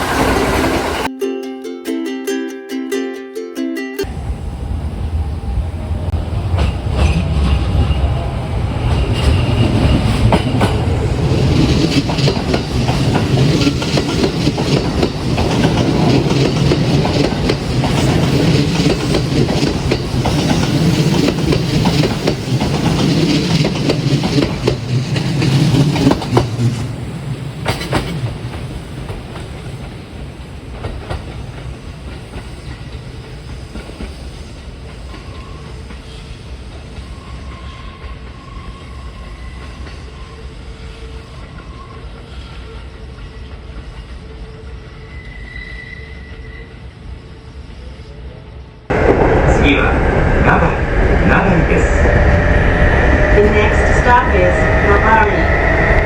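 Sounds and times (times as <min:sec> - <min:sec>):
electric train passing: 0:00.0 - 0:01.1, 0:04.0 - 0:56.0
wheels clacking over rail joints: 0:06.3 - 0:34.1.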